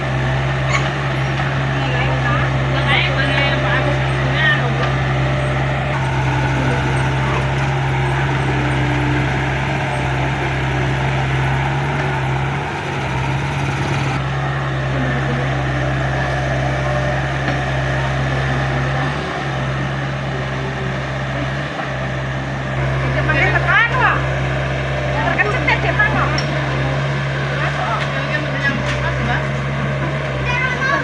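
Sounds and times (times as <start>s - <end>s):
excavator diesel engine droning: 0.0s - 31.0s.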